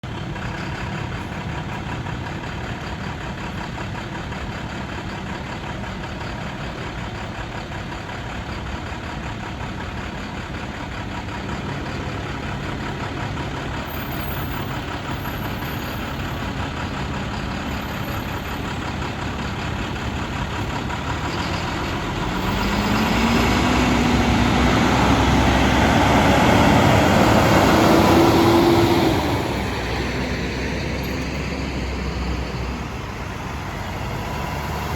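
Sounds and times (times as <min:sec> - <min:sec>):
heavy truck engines running: 0:00.0 - 0:34.9
truck accelerating: 0:00.0 - 0:34.9.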